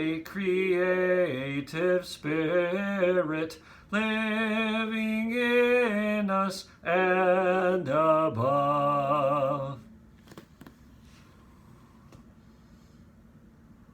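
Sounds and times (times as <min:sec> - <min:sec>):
man singing a hymn unaccompanied: 0:00.0 - 0:09.9.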